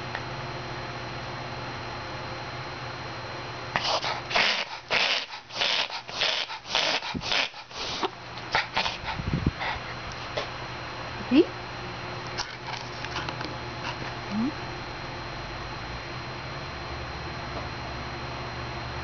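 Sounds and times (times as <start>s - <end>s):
dog reverse sneezing: 3.8s - 9.0s.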